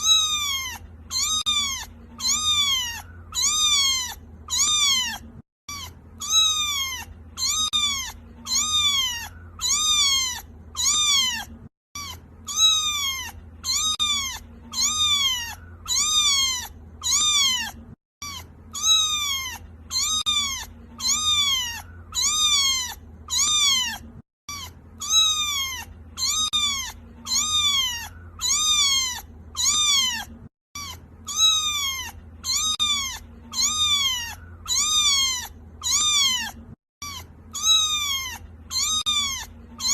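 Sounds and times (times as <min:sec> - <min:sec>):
kitten meowing: 0:00.0 - 0:39.9.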